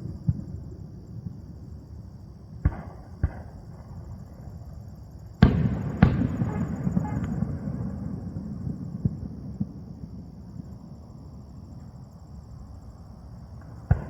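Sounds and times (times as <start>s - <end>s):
fireworks bursting: 5.4s - 9.8s
rumbling echo: 5.4s - 10.1s.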